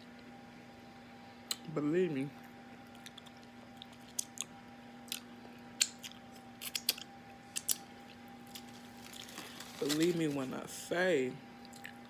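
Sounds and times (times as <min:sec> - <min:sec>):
faint steady hum: 0:00.0 - 0:12.0
wet mouth smacks chewing: 0:02.8 - 0:08.2.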